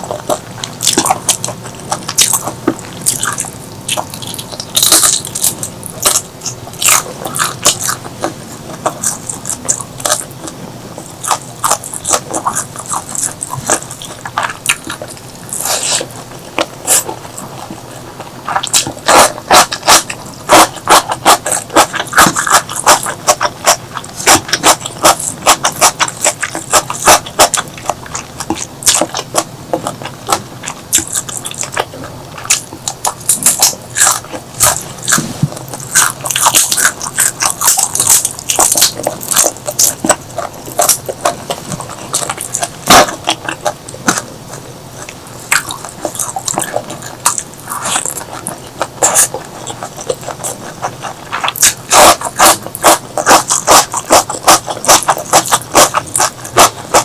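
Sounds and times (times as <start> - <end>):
person chewing food: 0.0 - 57.0
wet mouth clicks: 45.0 - 57.0.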